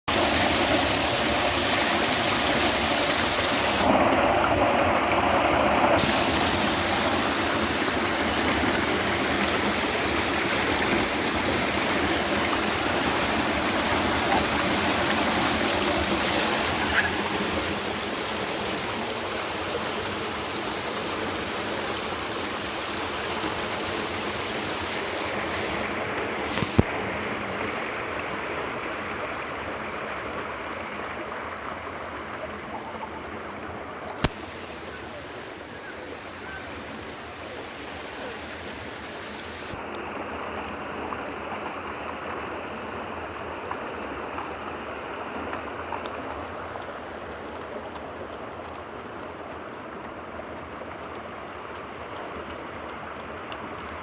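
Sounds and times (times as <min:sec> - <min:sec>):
waterfall rushing: 0:00.1 - 0:32.3, 0:34.2 - 0:40.2.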